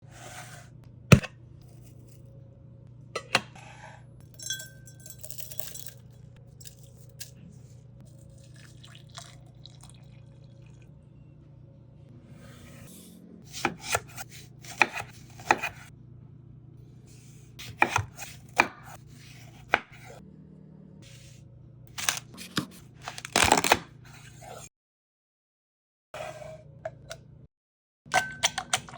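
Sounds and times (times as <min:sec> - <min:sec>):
knife and glassware clinks: 0:04.3 - 0:06.0
low hum: 0:10.0 - 0:13.5, 0:15.9 - 0:17.6, 0:20.0 - 0:21.9.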